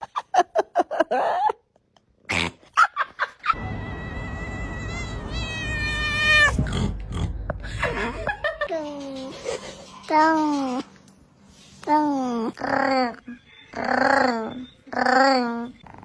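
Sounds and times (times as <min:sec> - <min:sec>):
cats meowing: 0:03.6 - 0:06.7.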